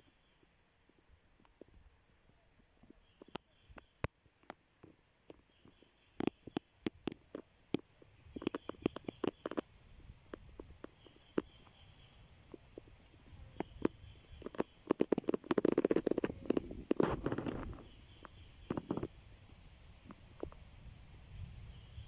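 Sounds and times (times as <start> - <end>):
high-pitched insect chorus: 0.0 - 22.0
dry clicks and crackles: 3.2 - 9.7, 12.5 - 19.1.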